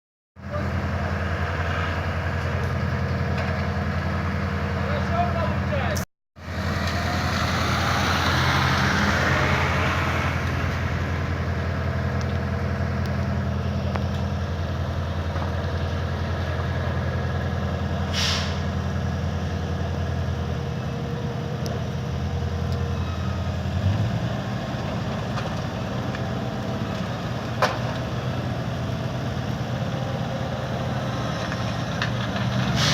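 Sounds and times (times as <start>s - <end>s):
diesel engine idling: 0.4s - 32.4s
brief hiss: 18.1s - 18.6s.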